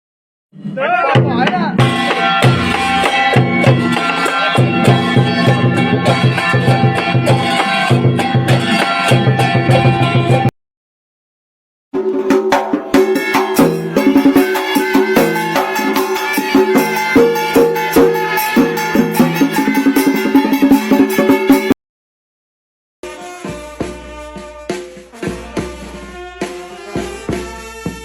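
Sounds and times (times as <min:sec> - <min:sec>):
rapid steady drumming: 0:01.1 - 0:10.5, 0:12.0 - 0:21.8, 0:23.0 - 0:28.0
pitched melody instrument: 0:12.5 - 0:21.8.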